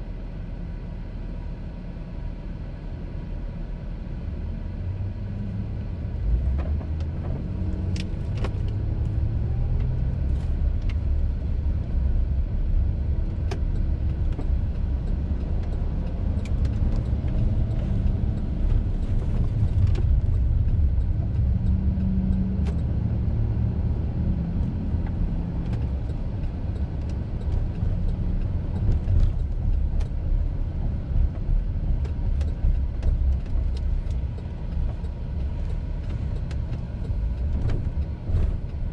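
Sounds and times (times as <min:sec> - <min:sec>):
car engine and road rumble: 0:00.0 - 0:38.9.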